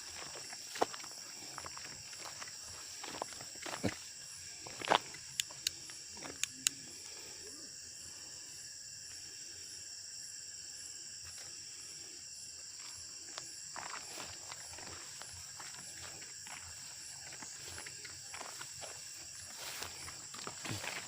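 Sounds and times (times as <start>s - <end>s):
footsteps: 0.0s - 5.6s, 12.8s - 21.0s
crickets trilling: 0.0s - 21.0s.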